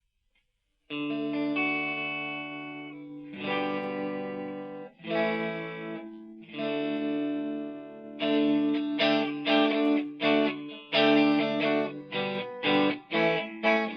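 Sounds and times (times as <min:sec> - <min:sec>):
overdriven electric guitar chords: 0:00.9 - 0:13.9.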